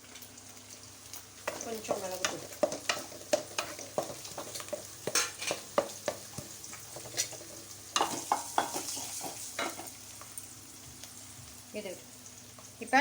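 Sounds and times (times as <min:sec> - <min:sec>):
oil sizzling: 0:00.0 - 0:13.0
spatula scraping frying pan: 0:02.2 - 0:09.9.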